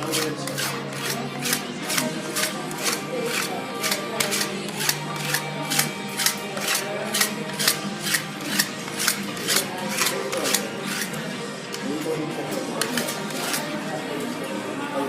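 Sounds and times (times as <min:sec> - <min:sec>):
metal spatulas clacking on steel: 0:00.0 - 0:11.8.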